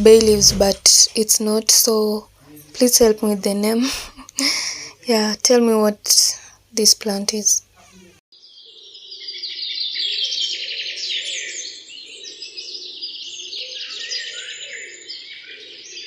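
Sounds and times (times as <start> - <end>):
small birds chirping and twittering: 7.3 - 16.0.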